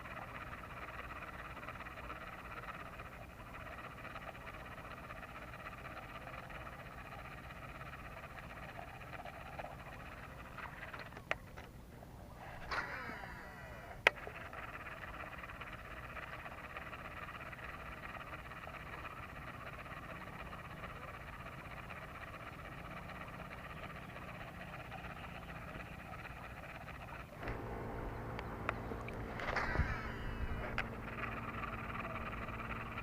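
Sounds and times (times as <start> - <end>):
frogs calling: 0.0 - 11.4, 12.2 - 33.0
whirring sweep: 12.2 - 17.8, 21.8 - 33.0
sharp click: 12.6 - 13.2, 28.3 - 31.8.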